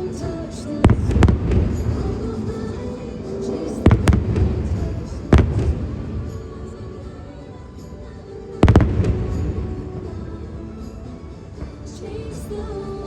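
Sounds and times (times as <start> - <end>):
soundtrack music: 0.0 - 13.0
fireworks booming bangs: 0.8 - 2.8, 3.7 - 6.6, 8.6 - 10.4.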